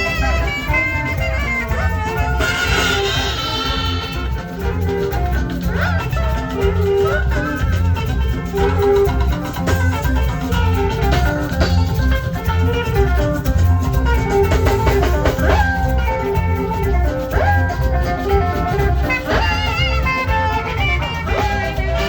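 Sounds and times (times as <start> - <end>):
drum and bass beat: 0.0 - 22.0
saxophone melody: 0.0 - 22.0.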